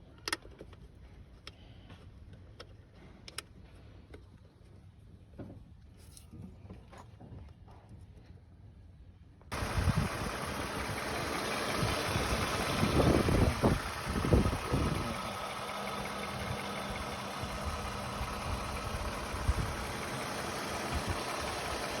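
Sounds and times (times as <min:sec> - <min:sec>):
car engine running: 0:09.5 - 0:22.0.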